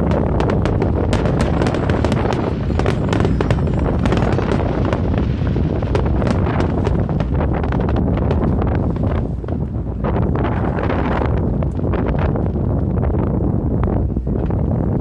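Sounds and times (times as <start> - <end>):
fireworks crackling and popping: 0.0 - 12.7
wind buffeting microphone: 0.0 - 15.0.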